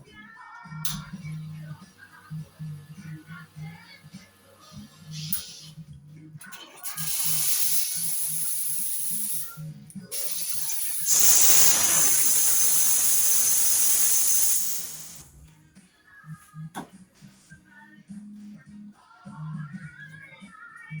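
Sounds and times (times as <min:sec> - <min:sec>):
espresso machine steam hiss: 0:04.5 - 0:05.8, 0:06.8 - 0:15.3.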